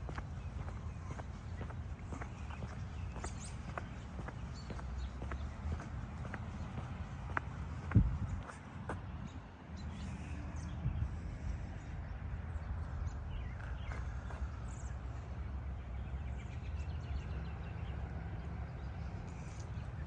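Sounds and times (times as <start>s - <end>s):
birds chirping: 0.0s - 11.1s.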